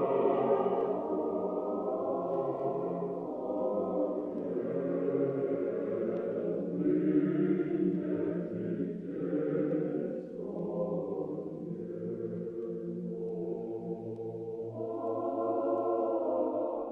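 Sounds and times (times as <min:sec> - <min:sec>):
slow choral chant: 0:00.0 - 0:16.9.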